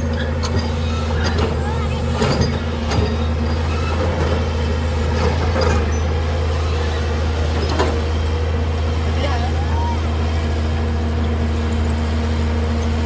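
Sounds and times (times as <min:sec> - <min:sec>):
heavy machine engine humming: 0:00.0 - 0:13.0.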